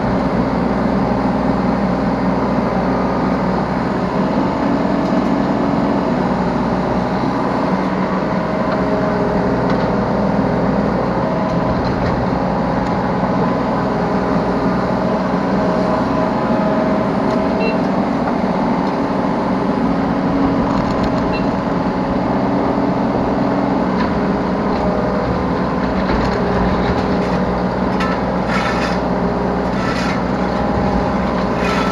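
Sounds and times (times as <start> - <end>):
excavator diesel engine running: 0.0 - 31.9
hydraulics working: 24.7 - 31.9.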